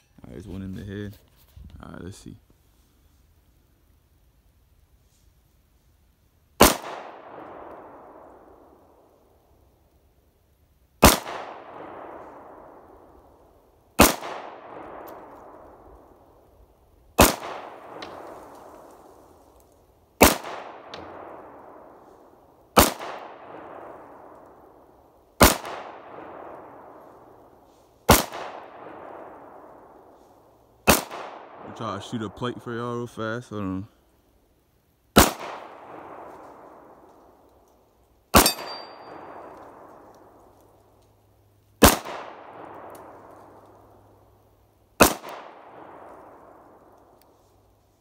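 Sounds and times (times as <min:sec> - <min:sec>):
pistol shots with echo: 0:06.6 - 0:08.5, 0:11.0 - 0:12.8, 0:14.0 - 0:15.6, 0:17.2 - 0:18.5, 0:20.2 - 0:21.9, 0:22.8 - 0:24.3, 0:25.4 - 0:27.0, 0:28.1 - 0:29.7, 0:30.8 - 0:32.4, 0:35.2 - 0:36.2, 0:38.3 - 0:40.1, 0:41.8 - 0:43.3, 0:45.0 - 0:46.8.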